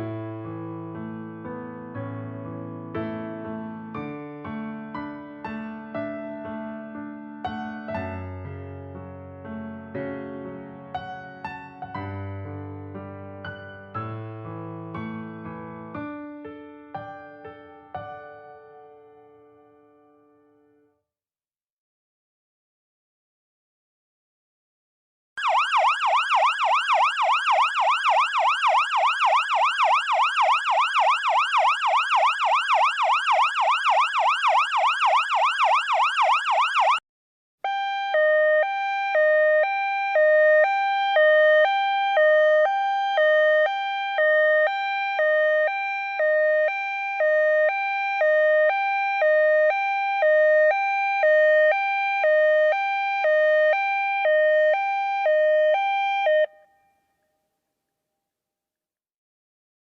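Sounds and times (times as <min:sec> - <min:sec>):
siren on fast yelp: 0:25.4 - 0:37.0, 0:37.6 - 0:56.8
two-tone hi-lo siren: 0:25.4 - 0:37.0, 0:37.6 - 0:57.0.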